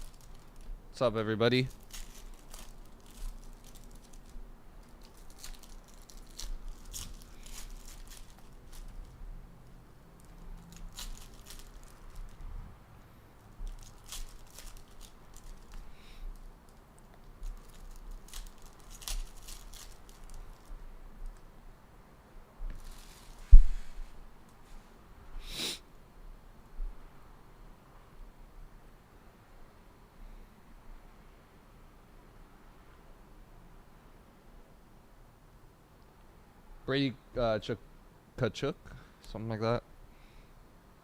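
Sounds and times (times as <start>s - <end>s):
foil wrappers crinkling and tearing: 0.0s - 0.8s, 1.5s - 9.2s, 10.2s - 12.4s, 13.5s - 21.4s, 22.8s - 23.5s.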